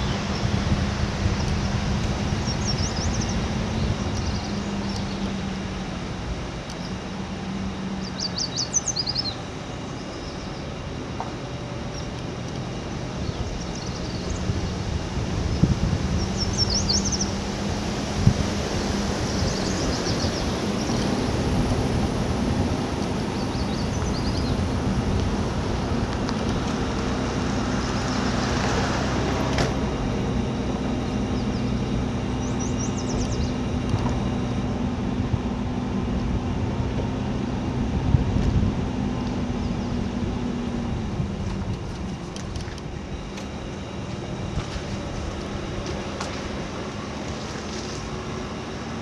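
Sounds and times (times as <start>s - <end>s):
birds chirping: 0.0s - 5.9s, 6.6s - 22.0s, 22.7s - 29.5s, 30.2s - 34.8s, 39.4s - 40.8s
engine running steadily: 0.0s - 49.0s.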